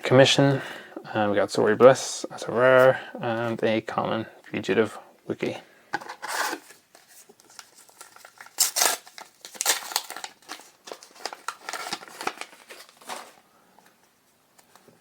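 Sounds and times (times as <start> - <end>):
foil wrapper crinkling: 6.4 - 13.5.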